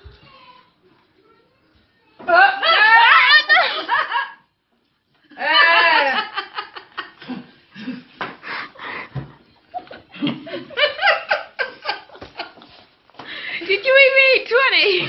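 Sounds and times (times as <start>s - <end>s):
people laughing: 2.4s - 4.5s, 5.3s - 8.2s, 8.8s - 12.8s.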